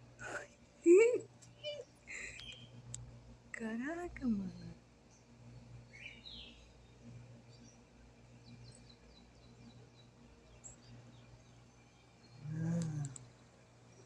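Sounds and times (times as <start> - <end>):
steady low hum: 0.0 - 14.0
faint bird chirps: 1.5 - 2.9, 5.9 - 7.8, 8.4 - 14.0.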